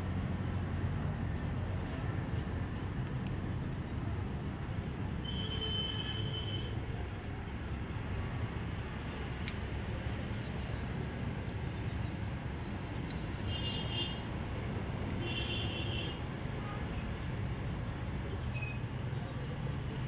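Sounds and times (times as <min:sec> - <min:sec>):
short high squeaks: 0:10.0 - 0:10.8, 0:18.4 - 0:18.9.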